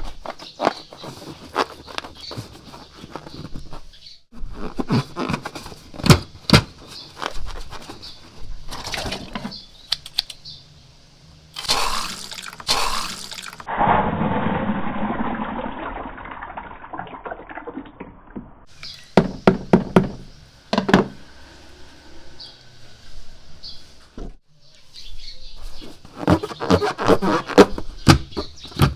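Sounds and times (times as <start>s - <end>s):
hissing bursts: 11.6s - 13.7s
watery gushing: 11.6s - 18.7s.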